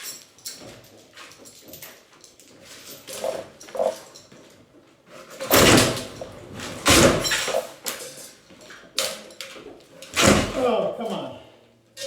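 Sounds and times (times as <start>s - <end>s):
heavy demolition crashes: 5.5s - 7.6s, 10.2s - 10.8s.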